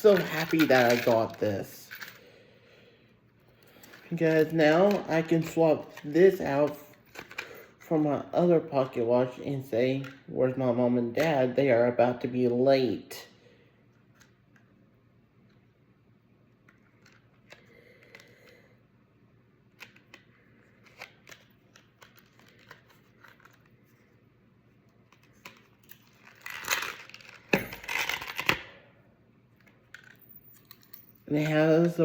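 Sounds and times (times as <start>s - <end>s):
low steady hum: 0.0s - 32.0s
packaging rustling and crinkling: 25.0s - 28.7s.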